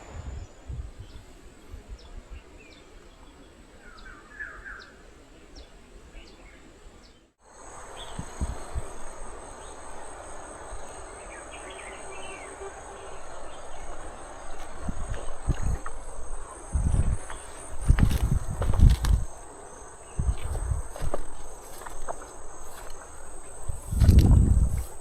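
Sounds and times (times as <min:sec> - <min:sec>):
high-pitched insect drone: 0:07.4 - 0:25.0
hiss: 0:07.4 - 0:25.0
low thumps: 0:14.5 - 0:19.4.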